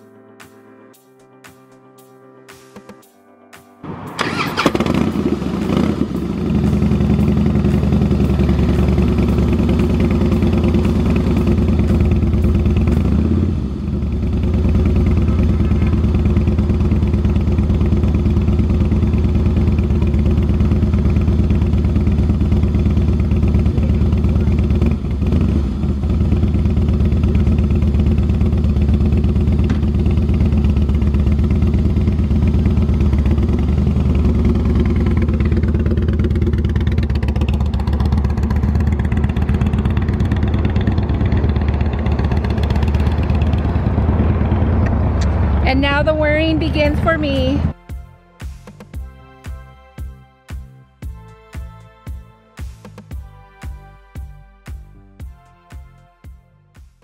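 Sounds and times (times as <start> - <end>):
motorcycle engine running: 3.8 - 47.8.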